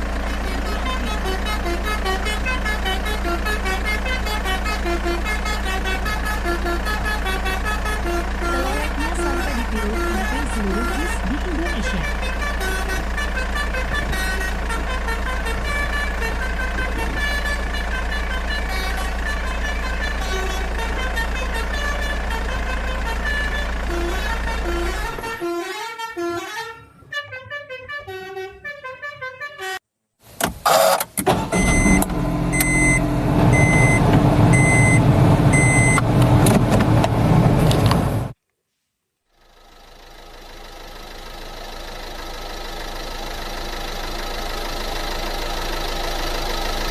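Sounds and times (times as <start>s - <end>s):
engine-like drone: 0.0s - 25.6s, 31.3s - 38.4s, 39.4s - 46.9s
reversing alarm beeping: 30.8s - 36.0s.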